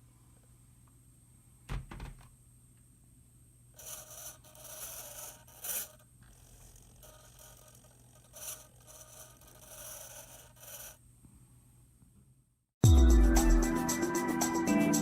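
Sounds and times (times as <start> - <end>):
toy vehicle tracks grinding on snow: 3.8 - 11.0.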